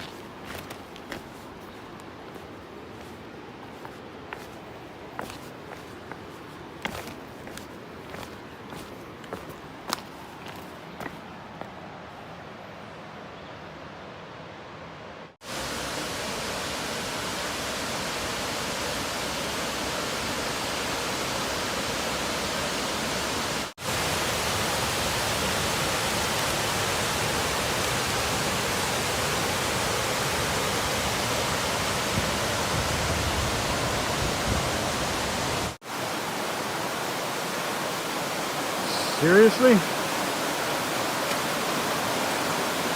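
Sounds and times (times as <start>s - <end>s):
fast-flowing water rushing: 0.0s - 11.2s, 15.4s - 42.9s.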